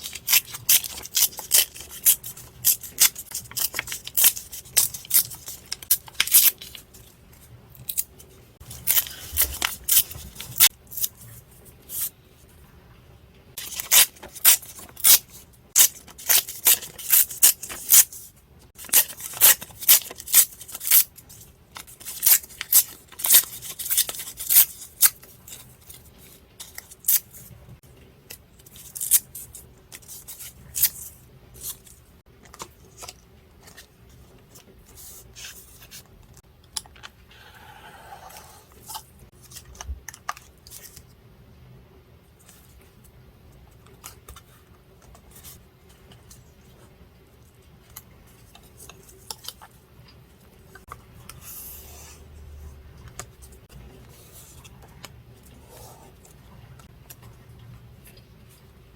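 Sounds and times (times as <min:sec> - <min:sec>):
scissors snipping paper: 0:00.0 - 0:06.8.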